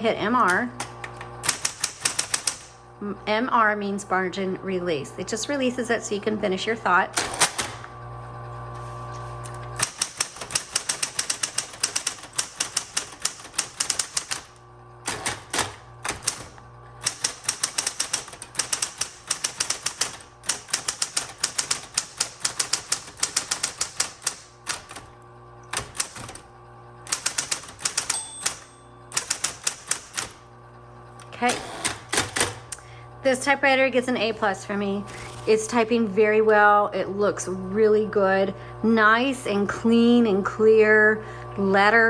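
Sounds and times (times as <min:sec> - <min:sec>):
typewriter motor humming: 0:00.1 - 0:02.9, 0:07.1 - 0:08.2, 0:09.4 - 0:33.0, 0:35.0 - 0:35.9
electric typewriter key strikes: 0:00.4 - 0:02.8, 0:07.2 - 0:07.8, 0:09.8 - 0:30.4, 0:31.3 - 0:32.7.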